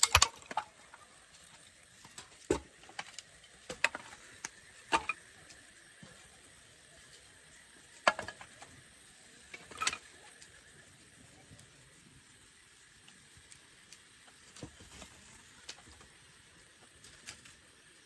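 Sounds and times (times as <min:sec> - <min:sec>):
sharp clicks and knocks: 0:00.0 - 0:00.8.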